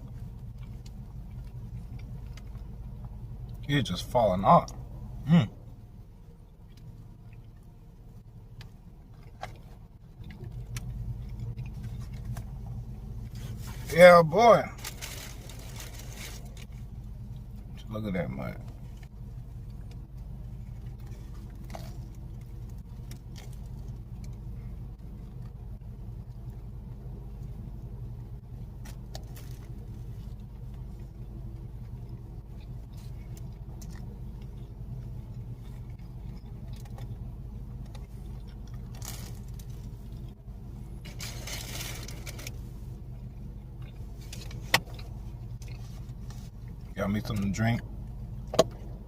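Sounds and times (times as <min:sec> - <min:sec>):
low hum: 0:00.0 - 0:49.0
paper wrapper rustling: 0:14.8 - 0:16.7.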